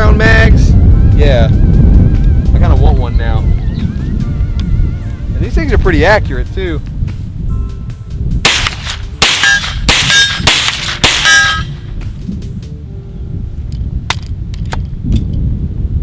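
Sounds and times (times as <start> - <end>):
metallic ringing: 7.6 - 12.0
gunshots: 8.5 - 11.8.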